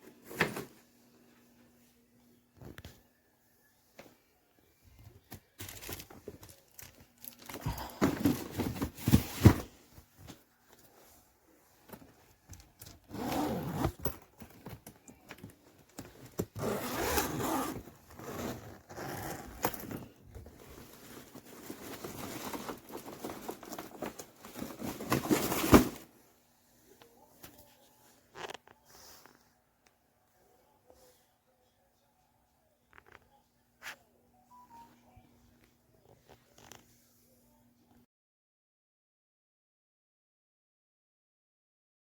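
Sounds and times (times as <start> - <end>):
suitcase scraping and rustling: 13.1 - 14.5, 16.0 - 26.1.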